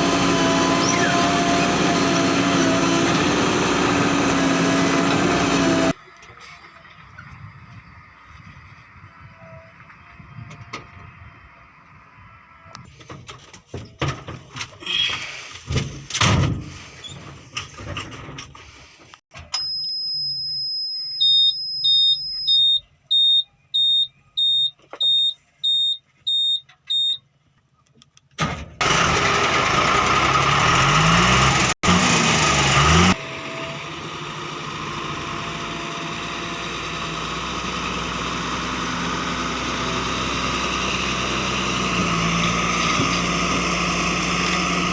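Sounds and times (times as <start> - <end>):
diesel engine cranking and running: 0.0 - 12.0, 28.4 - 44.9
knocks and clatter: 12.9 - 14.8
high warning beeps: 19.5 - 27.2.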